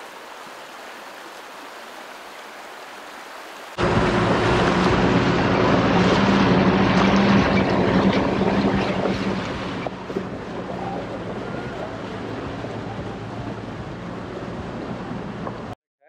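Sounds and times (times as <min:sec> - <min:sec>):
creek flowing: 0:00.0 - 0:15.8
water rushing and splashing: 0:00.0 - 0:15.8
vehicle engine under load: 0:03.8 - 0:15.8.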